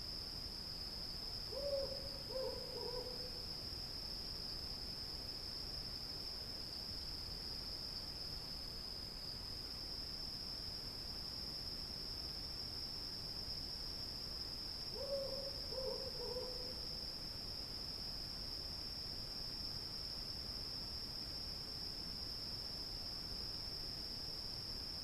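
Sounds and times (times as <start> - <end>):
cicadas droning: 0.0 - 25.0
owl hooting: 1.5 - 3.2, 15.0 - 16.8.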